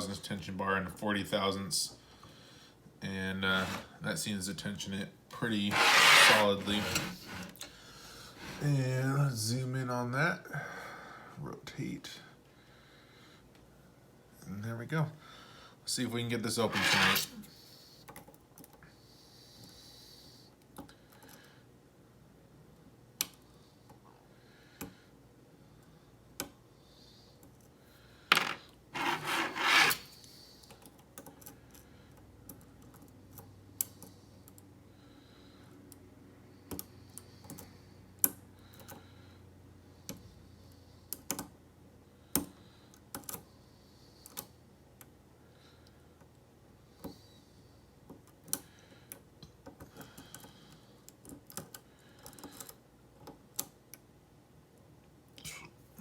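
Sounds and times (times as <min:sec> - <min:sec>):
scraping rustle: 0:03.5 - 0:03.9, 0:05.6 - 0:07.7, 0:16.6 - 0:17.5, 0:28.4 - 0:30.2.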